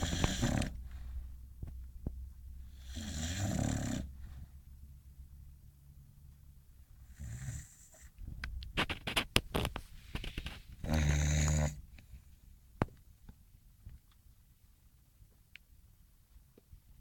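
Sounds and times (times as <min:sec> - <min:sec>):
dog snoring: 0:00.0 - 0:01.0, 0:02.7 - 0:04.4, 0:07.0 - 0:08.1, 0:10.8 - 0:11.8
sharp clicks and smacks: 0:08.3 - 0:10.8.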